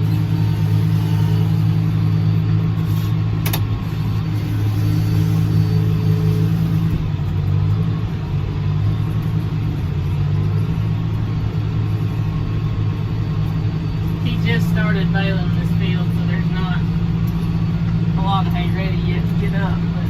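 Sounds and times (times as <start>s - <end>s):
tractor engine running: 0.0s - 20.0s.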